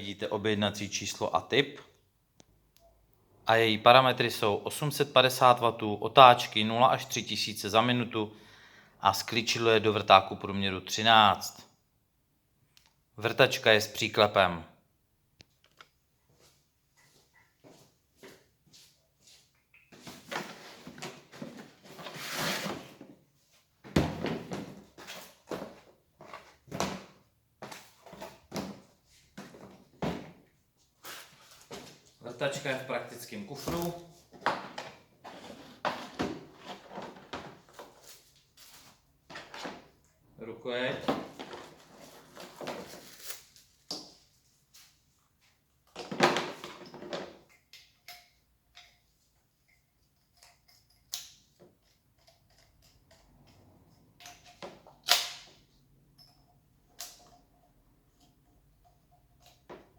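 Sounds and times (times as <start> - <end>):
hard object sliding: 20.1 - 23.0, 35.2 - 37.1
hard plastic parts clattering: 33.6 - 40.0, 41.0 - 43.2, 45.9 - 49.0.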